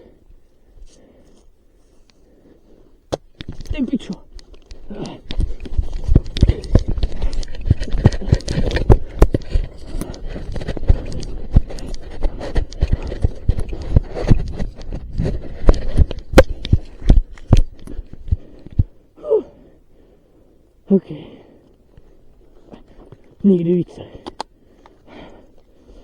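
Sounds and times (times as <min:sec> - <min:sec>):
gear jostling thumps: 0:03.1 - 0:19.0
running footfalls: 0:03.1 - 0:19.0.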